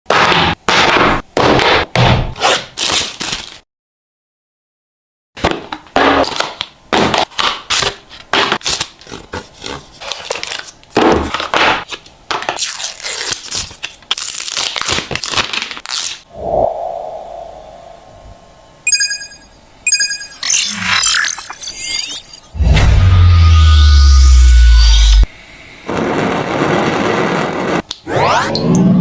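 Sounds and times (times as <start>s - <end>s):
box and plastic wrapping crackling: 7.3s - 16.2s.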